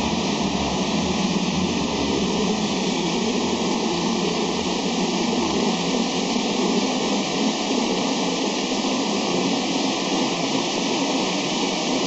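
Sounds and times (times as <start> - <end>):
low hum: 0.0 - 5.6
machine whirring and hissing: 0.0 - 12.0.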